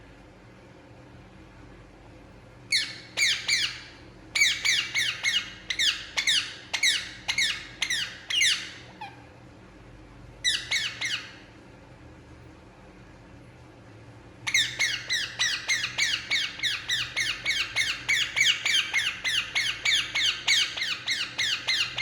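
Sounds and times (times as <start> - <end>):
parakeet shrill calls: 2.7 - 9.2, 10.4 - 11.4, 14.5 - 22.0.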